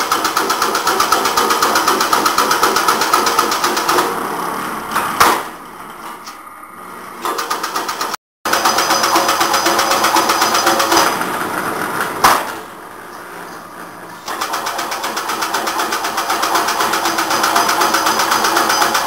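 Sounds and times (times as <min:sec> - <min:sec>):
weaving machine clattering: 0:00.0 - 0:04.2, 0:07.2 - 0:12.6, 0:14.2 - 0:19.0
sharp knock: 0:05.2 - 0:05.6, 0:12.2 - 0:12.6.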